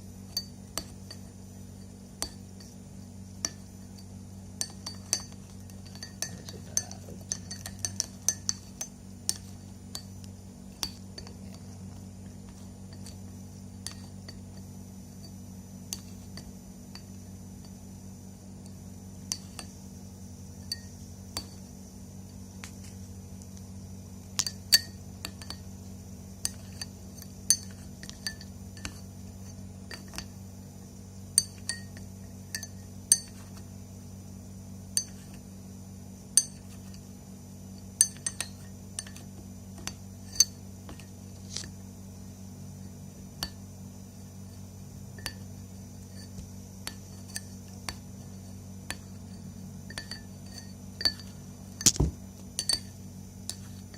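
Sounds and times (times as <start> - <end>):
steady low hum: 0.0 - 53.9
spoon clinking against glass: 3.4 - 10.1, 24.4 - 25.7, 26.4 - 29.0, 31.4 - 33.4, 38.0 - 39.2, 49.3 - 52.0, 52.6 - 53.7.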